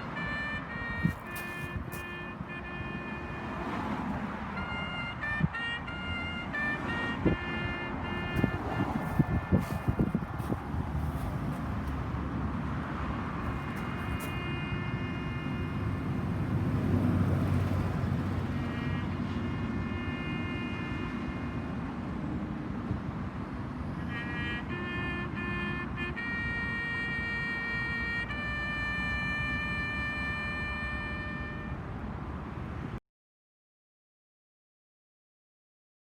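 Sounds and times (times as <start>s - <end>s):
bugle playing long notes: 0.0s - 10.9s, 13.5s - 15.6s, 24.1s - 31.8s.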